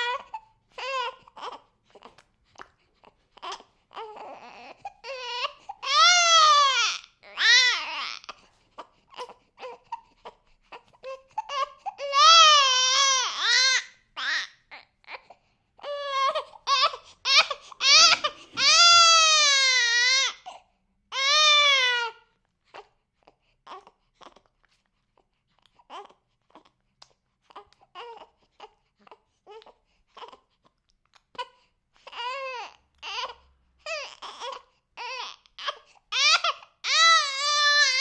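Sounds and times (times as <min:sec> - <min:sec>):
baby crying: 0:00.0 - 0:02.2, 0:03.4 - 0:22.9, 0:31.4 - 0:38.0.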